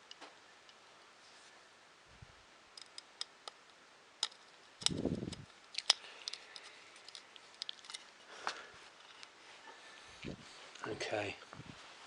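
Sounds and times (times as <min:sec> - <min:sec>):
plastic parts rattle: 0:04.2 - 0:08.2, 0:08.9 - 0:09.3.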